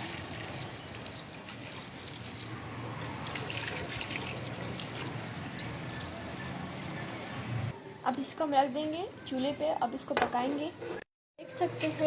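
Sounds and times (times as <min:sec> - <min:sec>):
water pouring into a pot: 0:00.0 - 0:06.9.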